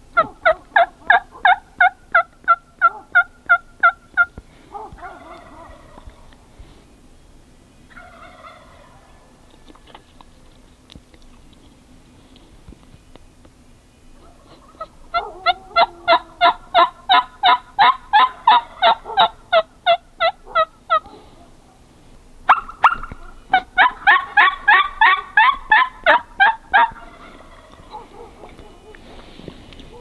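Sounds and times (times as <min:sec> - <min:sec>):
turkey clucks: 0:00.0 - 0:06.5, 0:07.9 - 0:10.6, 0:14.2 - 0:30.0
turkey yelping: 0:00.1 - 0:06.3, 0:07.9 - 0:10.0, 0:14.2 - 0:29.2.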